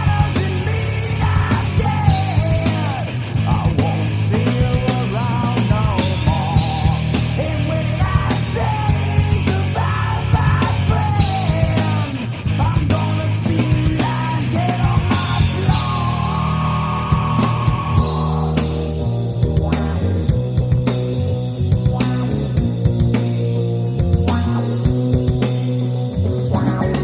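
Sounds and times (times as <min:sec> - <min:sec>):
singer half-yelling: 0:00.0 - 0:19.1
rock band playing: 0:00.0 - 0:27.0.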